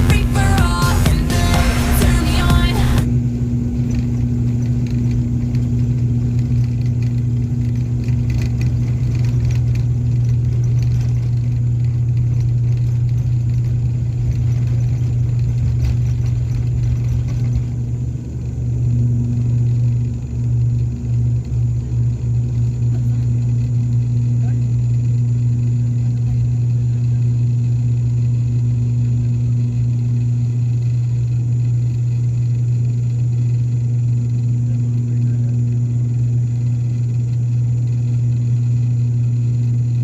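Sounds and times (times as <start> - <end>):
aircraft engines droning: 0.0 - 40.0.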